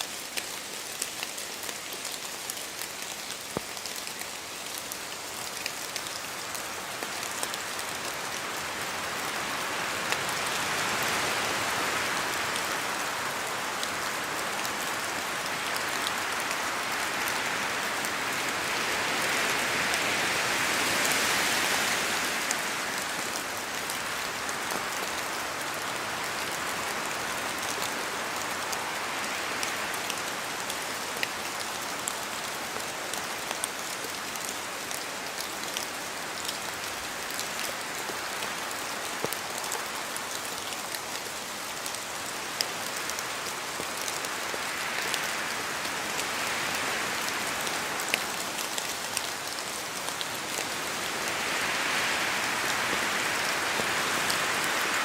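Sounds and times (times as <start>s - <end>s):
steady rain in forest: 0.0s - 55.0s
wind through trees: 0.0s - 55.0s
drops ticking from trees: 0.1s - 7.6s.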